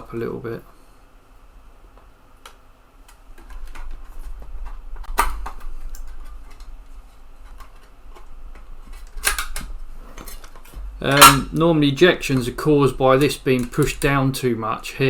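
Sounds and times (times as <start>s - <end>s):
steady low hum: 0.0s - 15.0s
floppy drive mechanism clicks: 9.0s - 14.4s.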